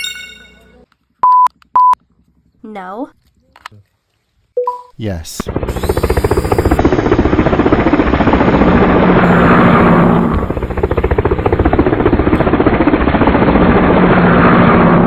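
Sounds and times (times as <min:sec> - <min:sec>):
toy helicopter chopping: 0:05.5 - 0:07.0, 0:09.2 - 0:12.5.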